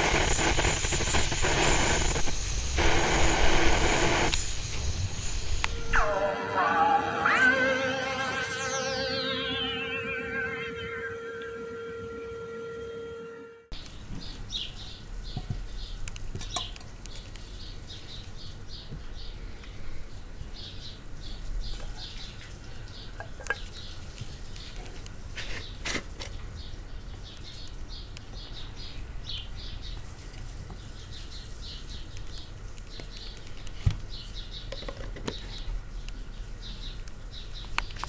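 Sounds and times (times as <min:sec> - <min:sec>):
small birds chirping: 0:26.4 - 0:38.0.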